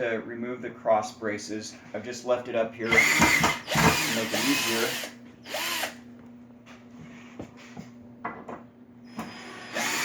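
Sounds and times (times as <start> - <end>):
power drill running: 2.8 - 6.0, 9.1 - 10.0.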